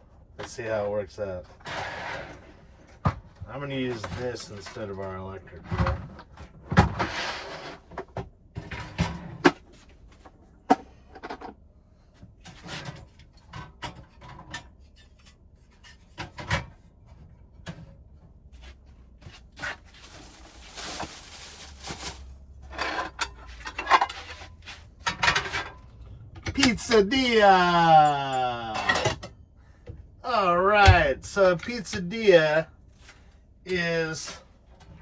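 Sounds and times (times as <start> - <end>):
rustling: 19.7 - 22.5.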